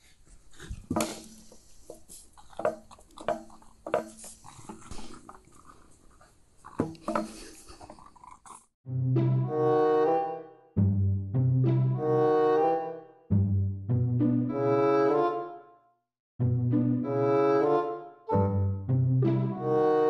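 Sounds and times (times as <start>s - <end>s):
knocks and thumps: 6.8s - 7.6s
music: 8.9s - 20.0s.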